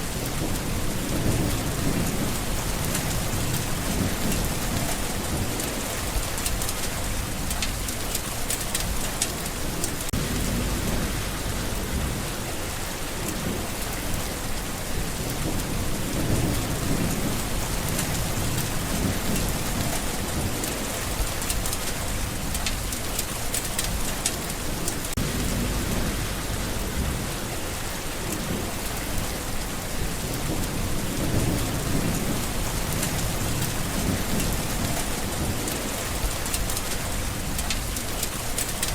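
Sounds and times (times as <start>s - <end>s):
rain falling on leaves: 0.0s - 38.9s
low rumble: 10.2s - 12.5s, 25.2s - 27.6s.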